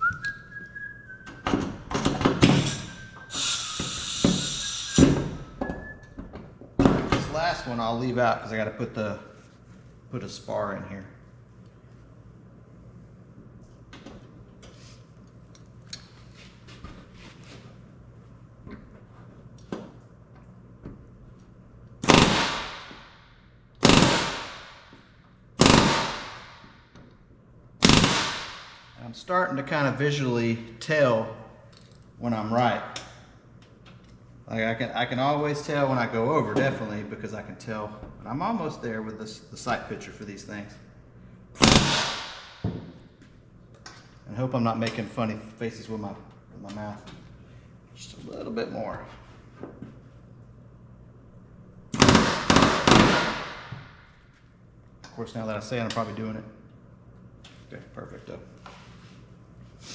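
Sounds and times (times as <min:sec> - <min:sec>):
pneumatic rivet gun hammering: 0:01.9 - 0:05.4, 0:22.0 - 0:23.1, 0:23.8 - 0:25.0, 0:25.6 - 0:26.7, 0:27.8 - 0:28.8, 0:41.6 - 0:42.5, 0:51.9 - 0:53.8.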